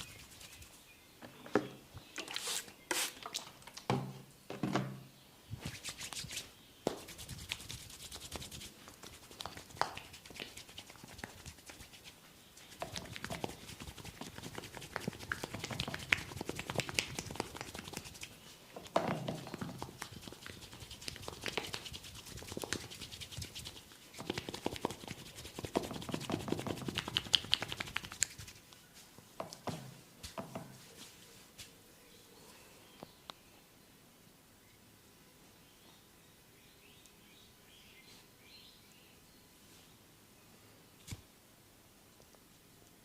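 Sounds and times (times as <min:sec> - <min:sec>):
fingers rubbing scalp and hair: 0:00.0 - 0:00.8, 0:05.6 - 0:28.8.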